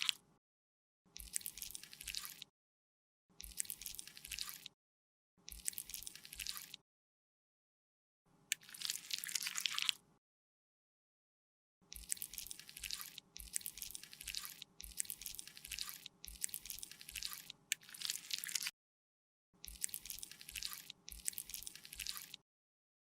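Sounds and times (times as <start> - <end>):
wet squishing makeup strokes: 1.1 - 2.5, 3.3 - 4.8, 5.4 - 6.8, 8.5 - 10.0, 11.8 - 18.8, 19.6 - 22.4.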